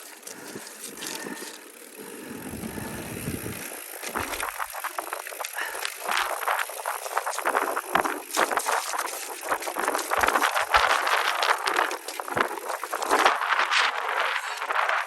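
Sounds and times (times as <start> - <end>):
bike rattling over rocks: 0.0 - 15.0
tyre and wind noise: 0.0 - 15.0.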